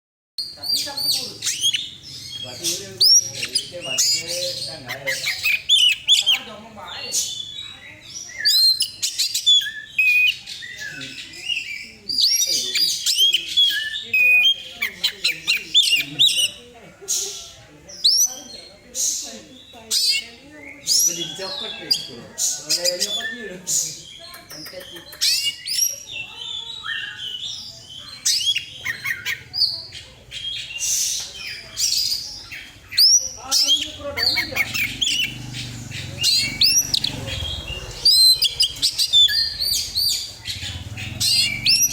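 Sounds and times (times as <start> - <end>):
magpie-robin singing whistles: 7.4 - 16.5
bird singing whistles and chirps: 30.5 - 41.9.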